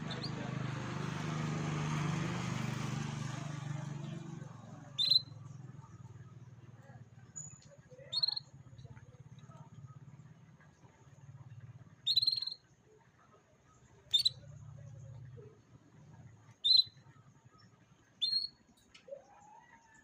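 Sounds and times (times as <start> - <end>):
canary chirping: 0.0 - 0.5, 4.8 - 5.4, 7.4 - 8.6, 12.0 - 12.6, 14.0 - 14.5, 16.6 - 17.0, 17.6 - 18.6.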